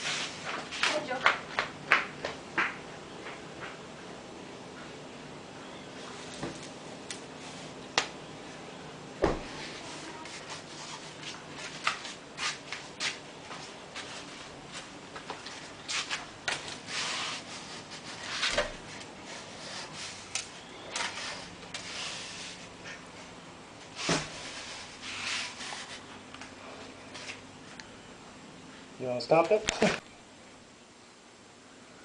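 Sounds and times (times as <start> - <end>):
short rubbing scrapes: 16.8 - 18.6, 20.9 - 23.0, 24.0 - 26.1.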